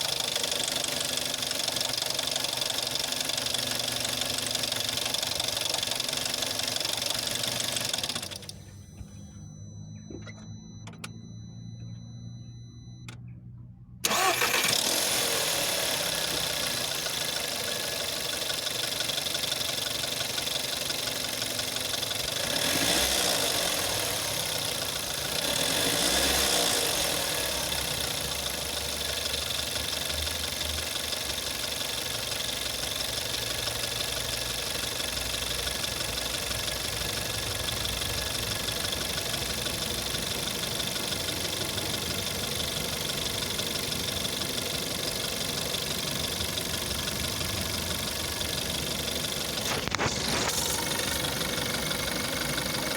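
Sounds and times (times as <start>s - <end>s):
petrol engine running: 0.0s - 12.0s, 14.0s - 52.9s
engine crackle and knock: 13.0s - 52.9s
engine starting up: 14.0s - 18.6s, 34.6s - 52.9s.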